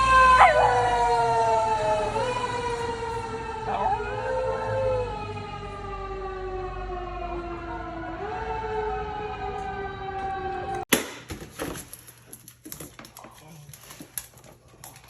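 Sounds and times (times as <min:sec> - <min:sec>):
dog howling: 0:00.1 - 0:05.2.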